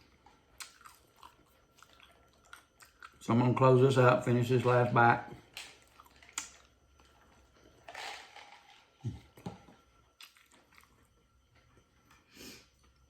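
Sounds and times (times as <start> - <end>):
person chewing and crunching: 0.0 - 3.3, 5.5 - 7.4, 10.1 - 11.2.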